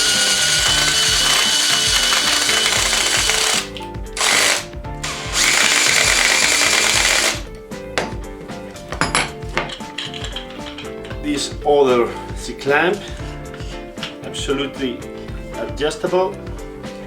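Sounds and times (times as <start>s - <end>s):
electric drill boring into wood: 0.0s - 7.5s
faint background music: 0.0s - 17.0s.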